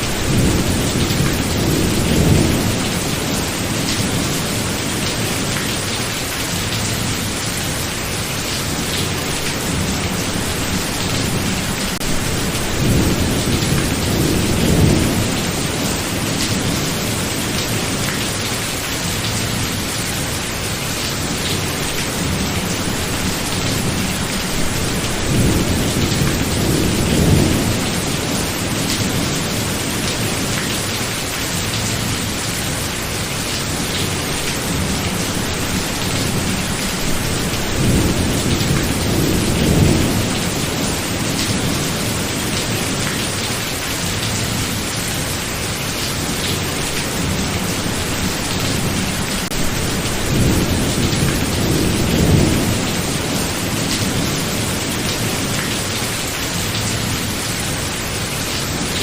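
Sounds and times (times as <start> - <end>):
steady rain: 0.0 - 59.0.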